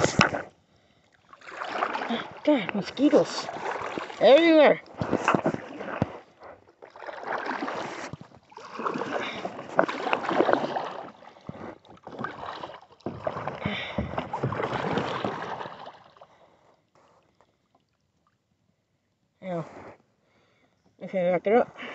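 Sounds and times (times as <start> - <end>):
paddle splashing through water: 1.2 - 16.5.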